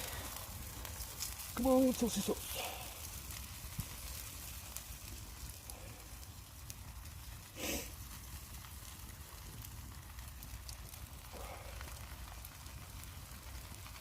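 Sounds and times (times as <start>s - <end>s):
campfire crackling and popping: 0.0s - 14.0s
sauce simmering in pan: 4.6s - 7.9s, 8.5s - 14.0s.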